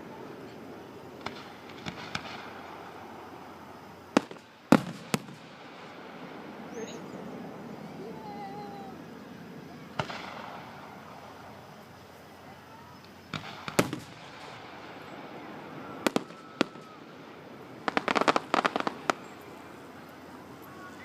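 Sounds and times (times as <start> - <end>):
firework bangs: 0.1 - 6.9, 9.9 - 12.1, 13.2 - 20.6
firework crackling pops: 0.8 - 6.7, 9.9 - 12.0, 13.0 - 20.0.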